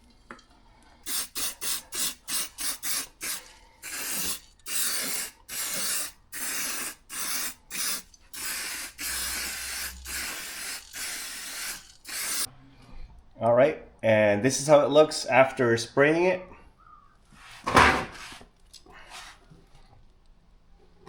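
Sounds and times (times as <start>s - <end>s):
spray can hissing in bursts: 1.0s - 12.5s.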